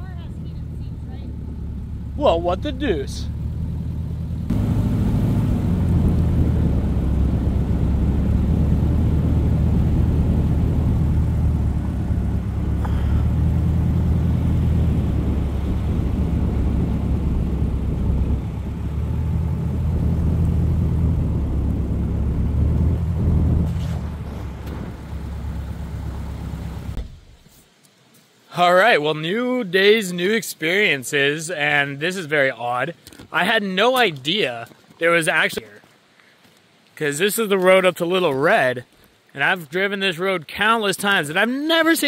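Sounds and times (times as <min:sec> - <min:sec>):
car engine drone: 0:00.0 - 0:27.5
tyre and wind noise: 0:04.5 - 0:27.5.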